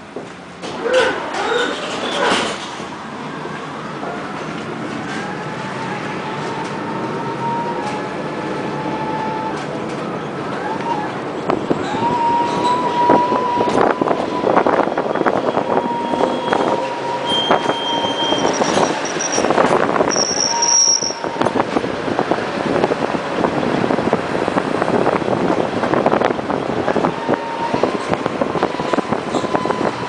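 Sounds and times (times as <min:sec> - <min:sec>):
tram clattering on rails: 0:00.0 - 0:30.0
high-pitched wheel squeals: 0:11.8 - 0:21.5, 0:27.2 - 0:30.0.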